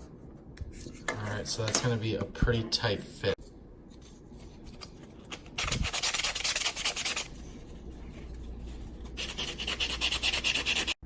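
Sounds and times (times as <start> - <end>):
sanding plastic rasping strokes: 9.2 - 11.0.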